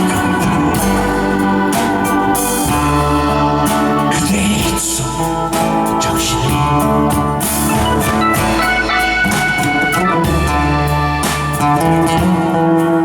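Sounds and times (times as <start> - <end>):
person singing: 0.0 - 11.4
drum kit: 0.0 - 13.0
sustained band chords: 0.0 - 13.0.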